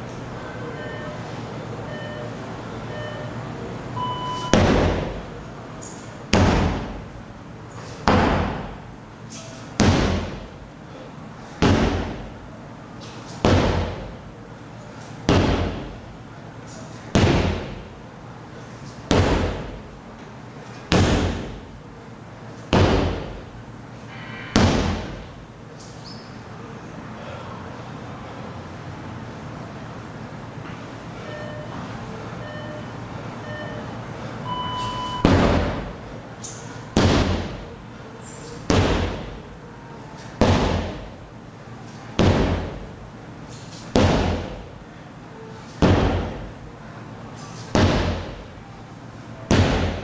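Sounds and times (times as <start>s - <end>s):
timer beep: 0.8s - 1.2s, 1.9s - 3.4s, 4.0s - 4.6s, 31.2s - 31.8s, 32.4s - 33.9s, 34.5s - 35.3s
sledgehammer blows ringing: 4.0s - 5.2s, 13.4s - 14.1s, 34.5s - 35.9s, 40.4s - 41.1s, 42.2s - 42.8s, 43.9s - 44.6s, 47.7s - 48.5s, 49.5s - 50.0s.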